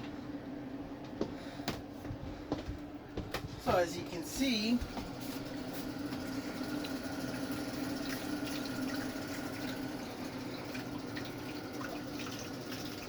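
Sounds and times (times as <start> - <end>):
water running from a faucet: 5.5 - 13.0.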